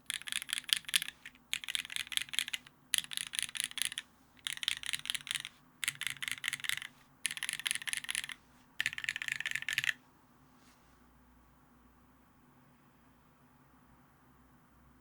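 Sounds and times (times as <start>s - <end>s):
mechanical keyboard typing: 0.0s - 10.0s.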